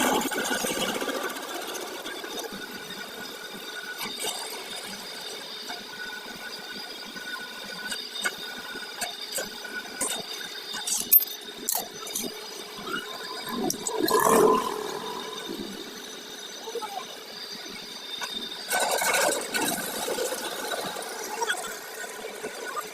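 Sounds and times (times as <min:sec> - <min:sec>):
machine hum: 0:12.8 - 0:16.7.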